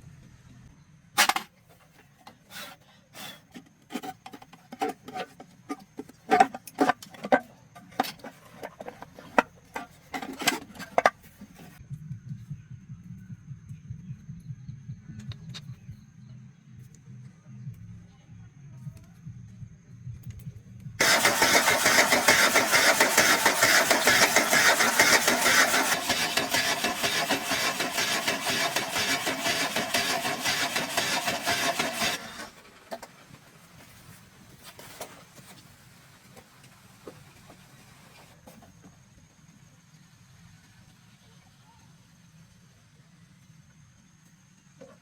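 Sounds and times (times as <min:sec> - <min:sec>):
car engine starting and running: 0:21.0 - 0:33.6.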